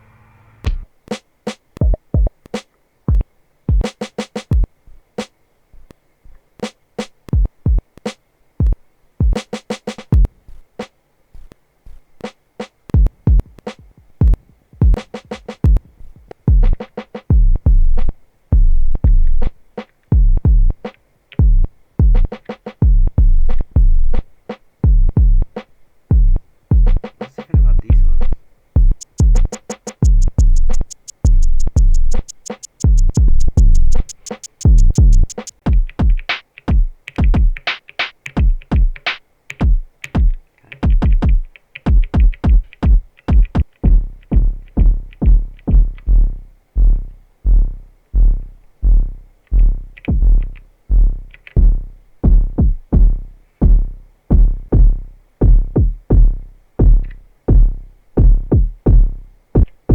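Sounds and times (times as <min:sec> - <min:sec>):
rapid hi-hat ticks: 0:00.6 - 0:46.2, 0:49.4 - 0:53.1
deep kick drums: 0:01.8 - 0:02.3, 0:13.0 - 0:19.5, 0:20.1 - 0:20.8, 0:21.4 - 0:24.2, 0:24.8 - 0:27.0, 0:27.6 - 0:37.6, 0:39.6 - 0:59.9.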